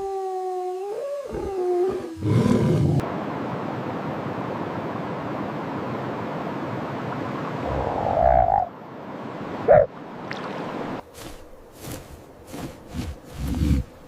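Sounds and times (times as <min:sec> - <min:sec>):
background hiss: 0:00.0 - 0:14.0
frog croaking: 0:07.6 - 0:08.7.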